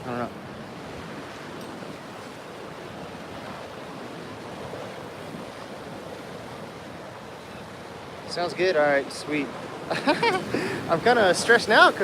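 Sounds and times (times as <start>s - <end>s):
ocean waves and surf: 0.0s - 12.0s.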